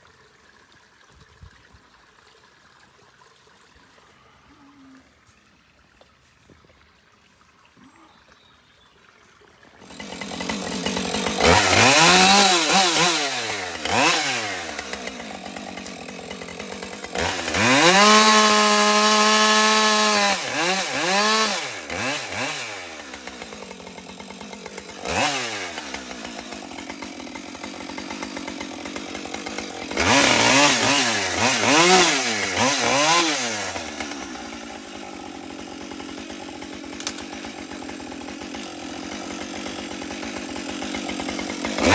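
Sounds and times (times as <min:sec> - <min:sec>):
chainsaw idling and revving: 0:09.8 - 0:41.9.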